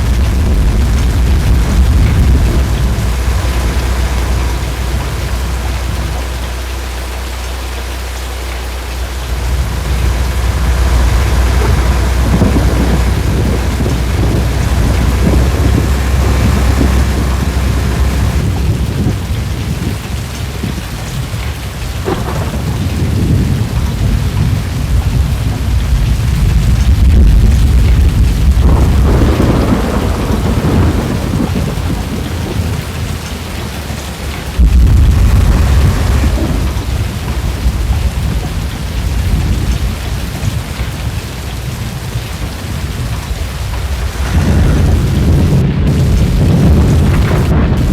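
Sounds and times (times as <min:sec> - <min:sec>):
deep rumble of thunder: 0:00.0 - 0:47.9
heavy rain falling: 0:00.0 - 0:47.9.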